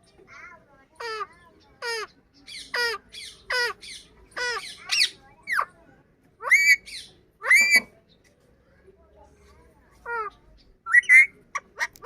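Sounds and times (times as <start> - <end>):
parrot calling: 1.0 - 5.7, 6.4 - 7.9, 10.0 - 12.0.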